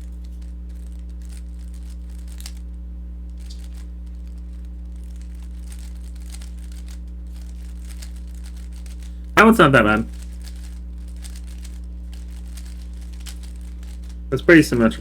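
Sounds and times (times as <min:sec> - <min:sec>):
low electrical hum: 0:00.0 - 0:15.0
plastic puzzle cube clicking: 0:10.1 - 0:14.1.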